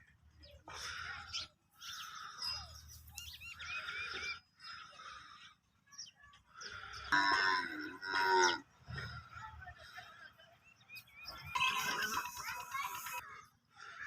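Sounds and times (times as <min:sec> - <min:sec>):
farm animal calling loudly: 0:11.4 - 0:13.2.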